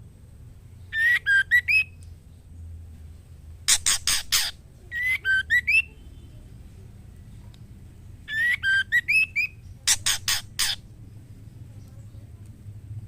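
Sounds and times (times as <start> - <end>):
bird whistled phrases: 0.9 - 2.0, 3.7 - 6.1, 8.3 - 10.8.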